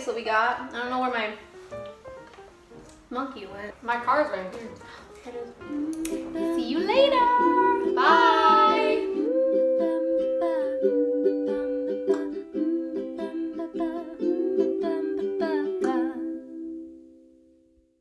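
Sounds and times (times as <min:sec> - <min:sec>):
plucked string music: 0:04.5 - 0:17.4.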